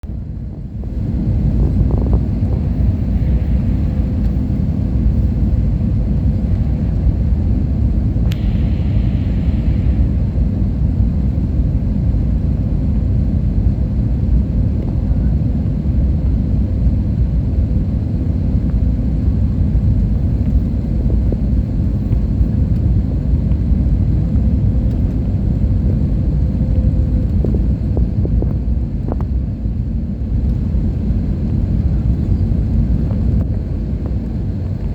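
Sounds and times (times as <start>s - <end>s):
jet engine rumble in cabin: 0.0s - 34.9s
sharp click: 8.3s - 8.6s.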